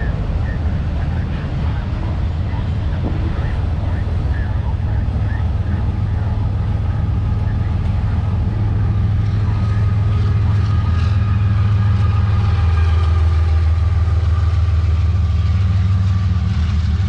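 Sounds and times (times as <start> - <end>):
faint steady tones: 0.0 - 17.0
freight train rumble: 0.0 - 17.0.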